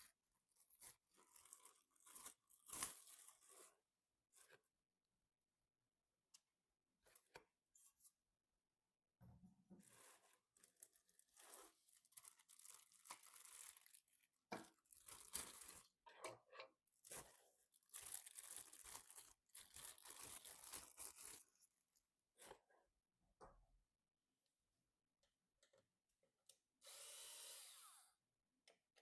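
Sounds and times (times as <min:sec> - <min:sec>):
packaging crinkling and tearing: 0:00.7 - 0:03.7, 0:09.9 - 0:16.0, 0:17.1 - 0:21.5.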